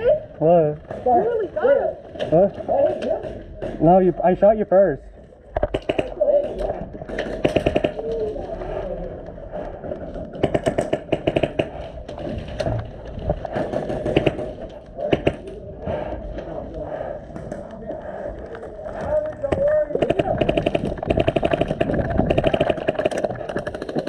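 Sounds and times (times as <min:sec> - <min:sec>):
voices of players: 0:00.0 - 0:10.4, 0:11.6 - 0:23.8
airsoft guns firing clicks: 0:05.6 - 0:08.2, 0:10.1 - 0:12.0, 0:13.5 - 0:15.6, 0:19.4 - 0:24.0.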